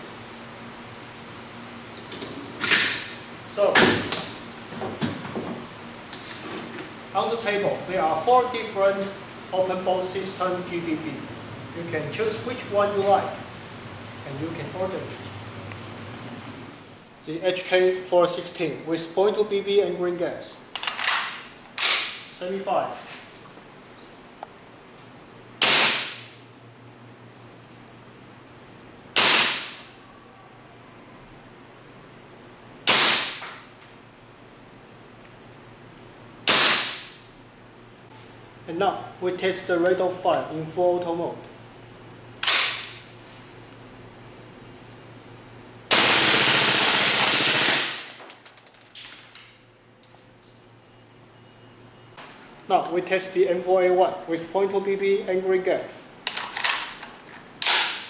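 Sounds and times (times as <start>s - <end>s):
airsoft rifle shots: 25.6s - 26.3s, 29.2s - 29.8s, 32.8s - 33.5s, 36.4s - 37.2s, 42.4s - 43.0s, 45.9s - 48.2s, 57.6s - 58.0s
airsoft rifle full-auto burst: 45.9s - 48.2s.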